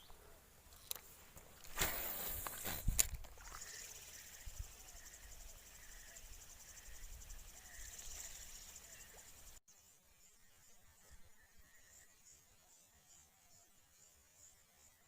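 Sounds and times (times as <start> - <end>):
insects chirring: 1.8 - 9.6.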